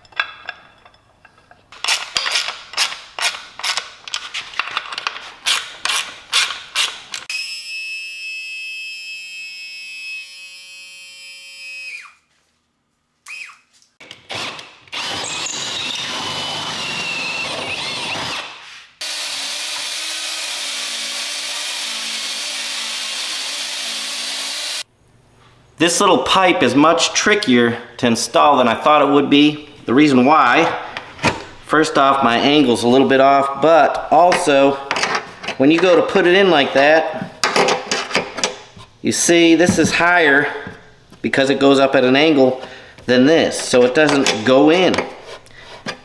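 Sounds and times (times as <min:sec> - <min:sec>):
power tool spinning: 0:14.0 - 0:24.9
harsh power tool running: 0:14.3 - 0:18.4, 0:19.0 - 0:24.8.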